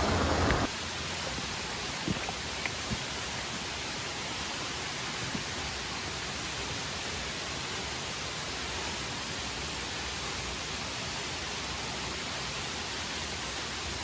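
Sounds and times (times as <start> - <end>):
rushing water: 0.0 - 14.0.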